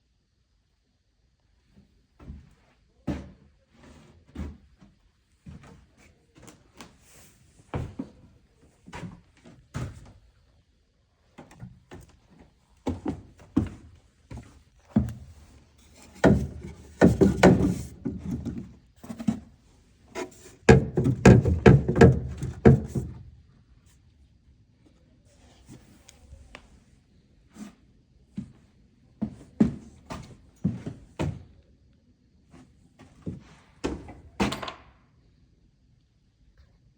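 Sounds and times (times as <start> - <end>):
thuds and knocks: 16.0 - 19.4, 20.6 - 23.3.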